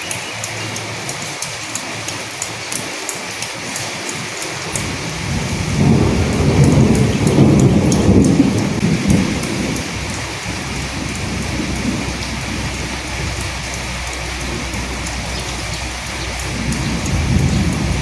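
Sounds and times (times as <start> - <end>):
steady rain falling: 0.0 - 18.0
low roll of thunder: 4.8 - 18.0.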